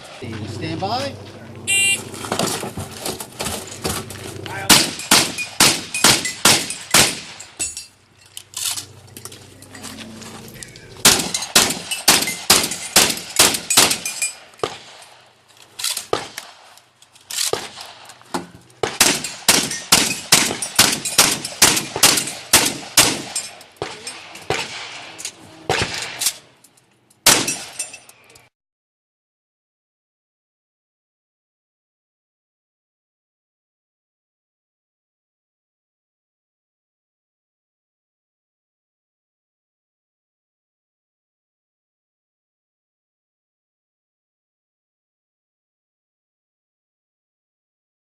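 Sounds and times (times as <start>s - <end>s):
pistol shots: 4.7s - 7.6s, 11.0s - 15.2s, 16.0s - 16.7s, 17.4s - 18.0s, 18.8s - 26.4s, 27.2s - 27.9s.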